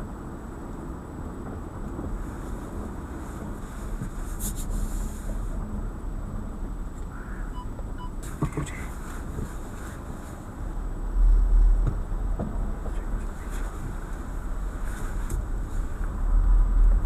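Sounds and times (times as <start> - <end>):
car noise rumble: 0.0 - 17.0
short faint beeps: 7.5 - 8.2.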